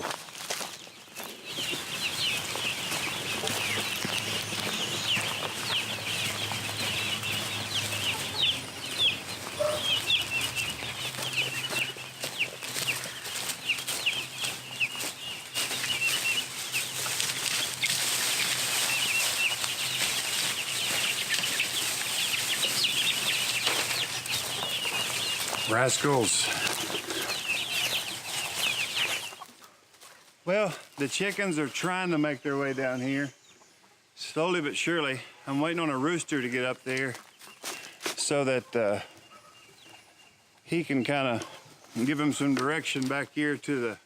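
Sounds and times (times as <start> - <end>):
chicks peeping: 0.0 - 44.0
wings flapping: 1.6 - 29.4.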